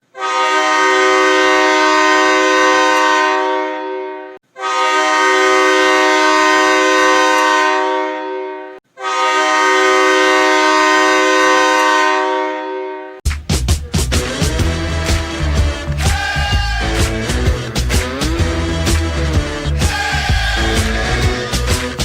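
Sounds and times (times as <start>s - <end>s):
hockey goal horn blasts: 0.1s - 13.2s.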